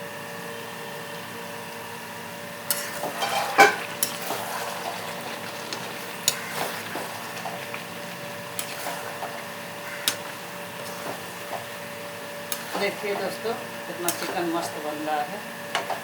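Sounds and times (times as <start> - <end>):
steady hum: 0.0 - 16.0
spoon scraping and knocking pan: 2.7 - 4.6.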